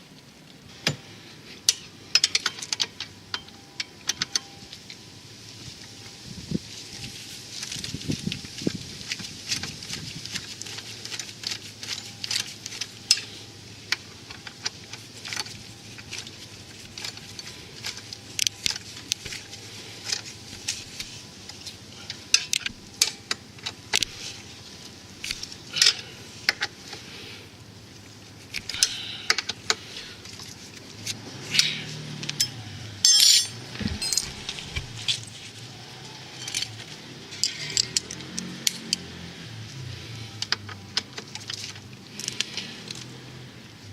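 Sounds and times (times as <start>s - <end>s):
metal tools clinking: 32.3s - 35.6s, 36.3s - 38.8s.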